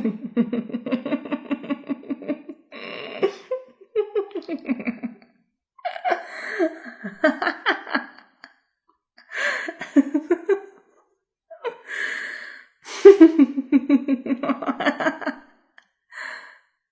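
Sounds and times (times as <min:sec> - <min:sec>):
woman laughing evilly: 0:00.0 - 0:08.5, 0:09.4 - 0:10.8, 0:12.9 - 0:15.5.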